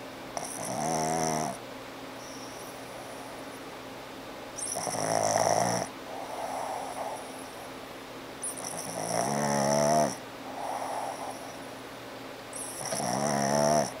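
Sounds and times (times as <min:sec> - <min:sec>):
dog snoring: 0:00.4 - 0:01.6, 0:04.6 - 0:07.7, 0:08.4 - 0:11.7, 0:12.5 - 0:14.0
soft dog breath: 0:02.2 - 0:03.6, 0:06.0 - 0:07.8, 0:10.4 - 0:11.8.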